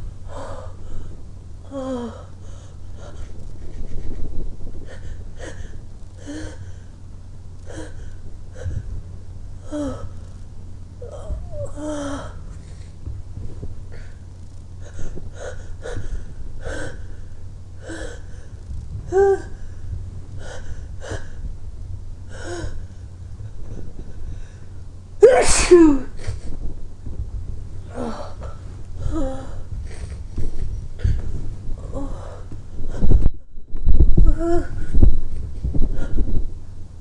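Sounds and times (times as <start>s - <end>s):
person gasping breaths: 0.3s - 4.1s, 4.8s - 7.0s, 7.6s - 10.4s, 11.0s - 21.6s, 22.2s - 26.7s, 27.8s - 33.2s.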